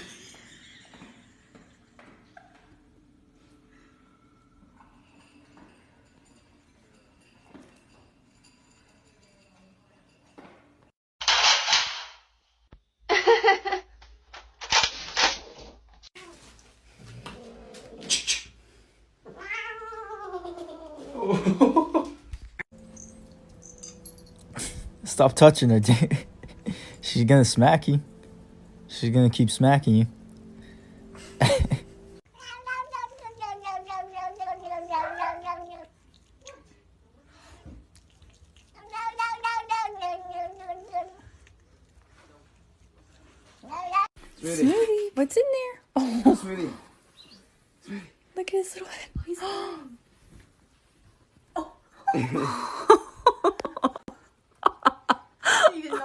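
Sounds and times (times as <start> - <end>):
cat yowling: 19.4 - 21.1, 32.4 - 36.8
cat hissing and yowling: 32.4 - 36.6, 38.4 - 41.2.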